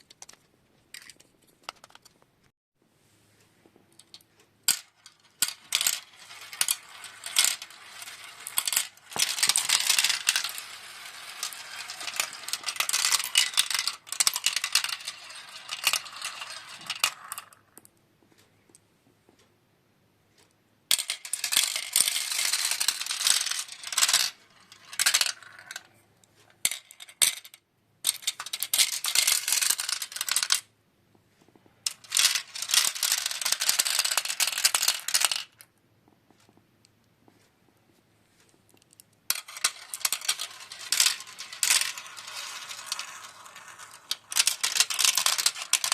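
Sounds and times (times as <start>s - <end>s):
marbles rattling down plastic tracks: 4.0s - 17.8s, 20.9s - 26.0s, 26.6s - 30.7s, 31.9s - 35.7s, 38.8s - 45.9s.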